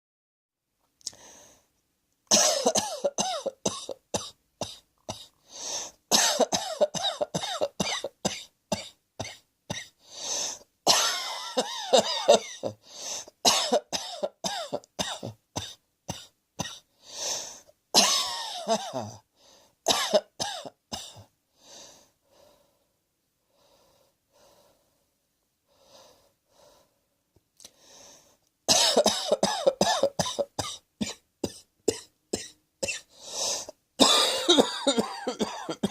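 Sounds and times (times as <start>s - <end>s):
person coughing: 2.3s - 5.3s, 6.1s - 10.0s, 10.9s - 12.8s, 13.5s - 16.8s, 18.0s - 19.2s, 19.9s - 21.3s, 28.7s - 33.1s, 34.0s - 35.9s.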